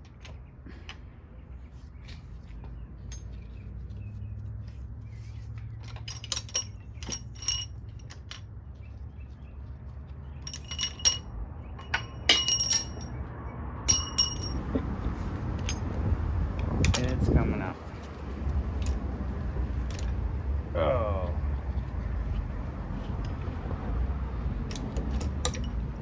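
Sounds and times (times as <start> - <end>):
metal tools clinking: 3.0 - 3.6, 5.7 - 8.5, 10.3 - 13.3, 13.9 - 15.9, 16.8 - 17.4, 24.7 - 25.8.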